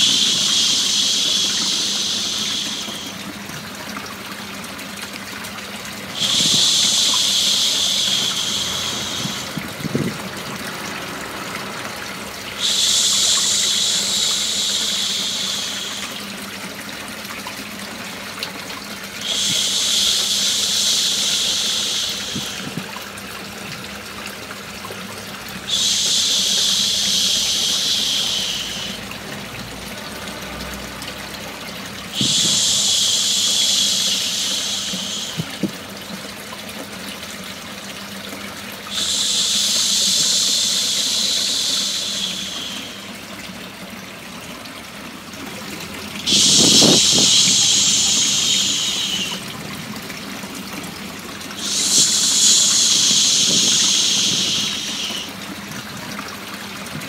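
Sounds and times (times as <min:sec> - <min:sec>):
person shushing: 0:00.0 - 0:03.2, 0:06.2 - 0:09.6, 0:25.7 - 0:29.1, 0:32.2 - 0:35.6, 0:38.9 - 0:43.1, 0:46.2 - 0:49.5, 0:51.6 - 0:55.4
running water: 0:00.0 - 0:57.0.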